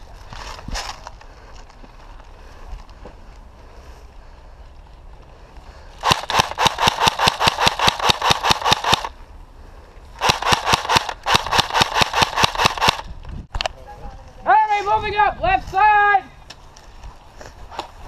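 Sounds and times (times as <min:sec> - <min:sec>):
airsoft gun firing full-auto: 0:06.0 - 0:09.1, 0:10.2 - 0:13.1.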